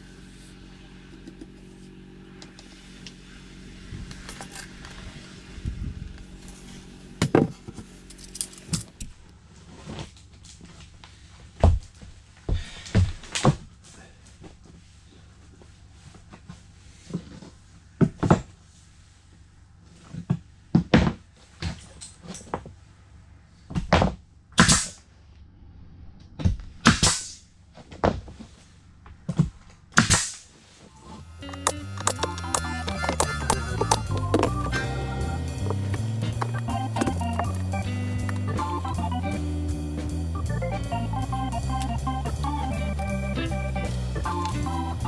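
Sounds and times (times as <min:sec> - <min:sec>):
nail gun shots: 0:24.6 - 0:25.0, 0:26.8 - 0:27.4, 0:30.0 - 0:30.5
boards knocking: 0:31.5 - 0:34.9.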